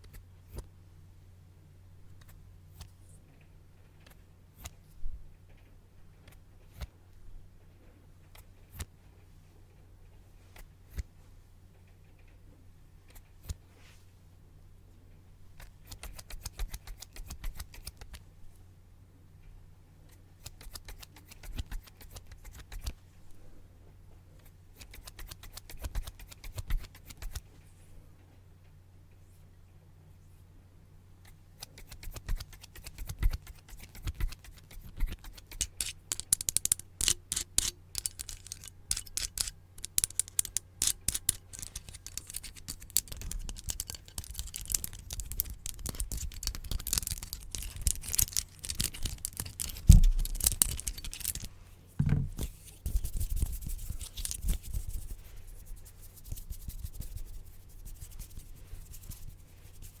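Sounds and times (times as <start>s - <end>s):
scratching and scraping: 31.6s - 60.0s.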